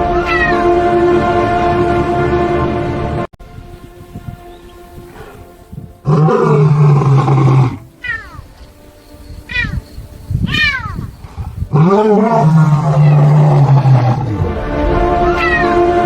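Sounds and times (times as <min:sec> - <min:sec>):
lions groaning calls: 0:06.0 - 0:08.6, 0:09.5 - 0:09.8, 0:10.5 - 0:14.5, 0:15.2 - 0:16.0
short higher lion calls: 0:15.3 - 0:15.8.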